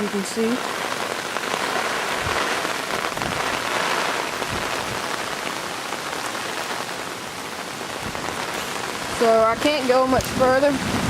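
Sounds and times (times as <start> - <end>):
heavy rain hissing: 0.0 - 11.0
faint low bumps: 2.2 - 5.1.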